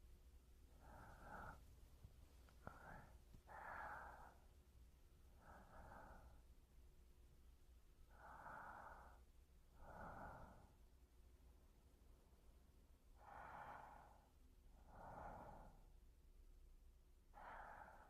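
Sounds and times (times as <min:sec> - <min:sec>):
soft slow human breathing: 0:00.6 - 0:07.1, 0:07.9 - 0:18.0.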